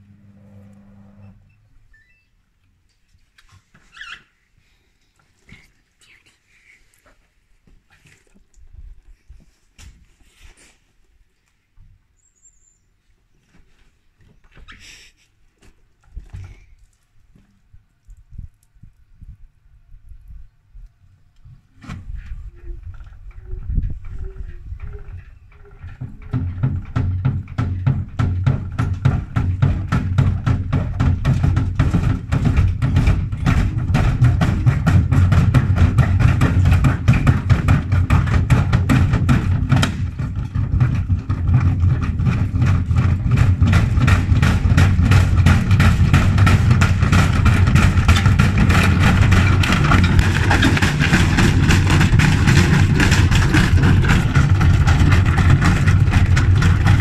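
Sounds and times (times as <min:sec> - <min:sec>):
washing machine knocking and banging: 0:26.0 - 0:57.0.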